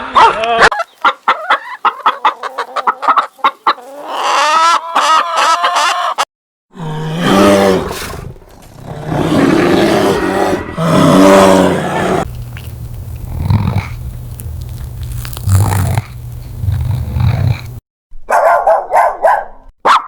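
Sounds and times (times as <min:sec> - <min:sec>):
farm animal calling: 0:00.8 - 0:06.2, 0:09.2 - 0:17.8
steady low hum: 0:10.6 - 0:17.8.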